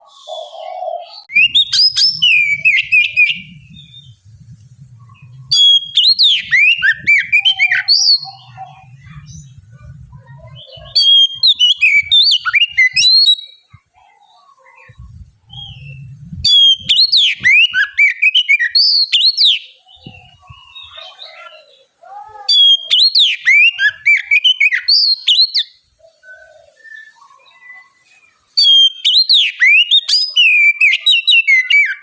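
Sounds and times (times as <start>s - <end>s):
bird singing whistles and chirps: 0.0s - 13.8s, 14.7s - 21.8s, 22.5s - 32.0s.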